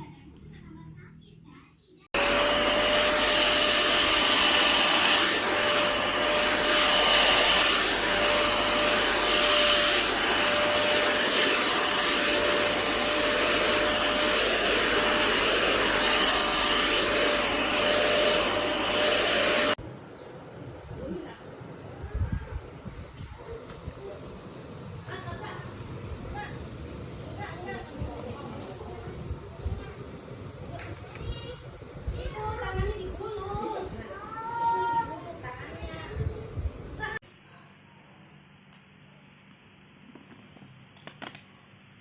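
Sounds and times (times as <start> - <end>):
handheld vacuum cleaner running: 2.2 - 19.8.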